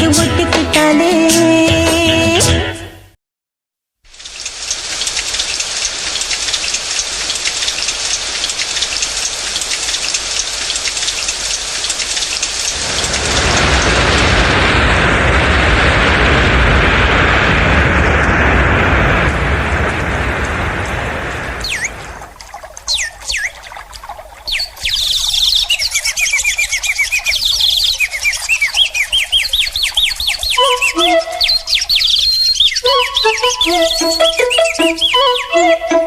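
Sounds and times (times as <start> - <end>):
rain falling: 4.1 - 36.0
low rumble: 12.8 - 22.3.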